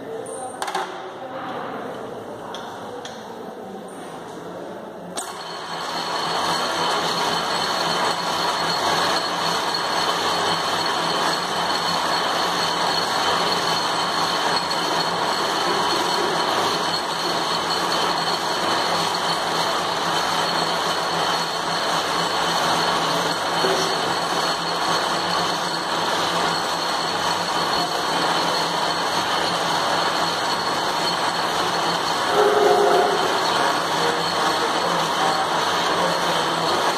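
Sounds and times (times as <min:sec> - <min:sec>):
lathe running with high whine: 0:05.2 - 0:36.9.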